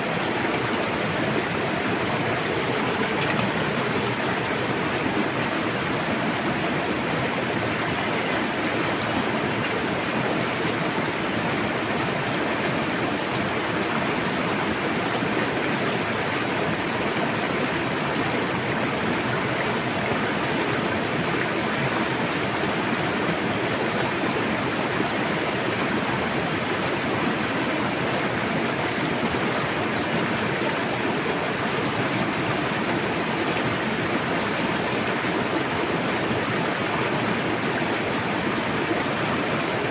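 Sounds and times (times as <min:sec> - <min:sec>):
river water rushing: 0:00.0 - 0:39.9.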